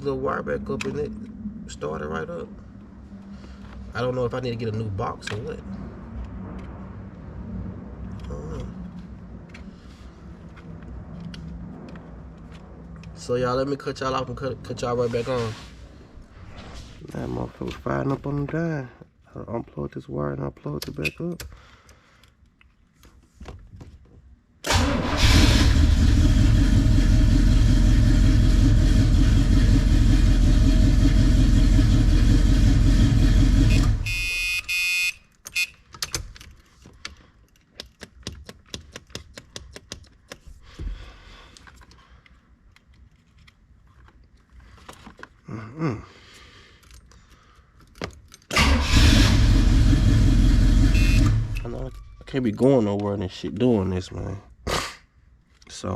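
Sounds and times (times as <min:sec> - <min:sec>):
car engine starting and running: 0:24.7 - 0:34.1, 0:48.5 - 0:52.0
light clicks and handling noise: 0:35.4 - 0:40.6, 0:41.4 - 0:45.5, 0:46.3 - 0:48.5
short buzz: 0:50.8 - 0:51.7.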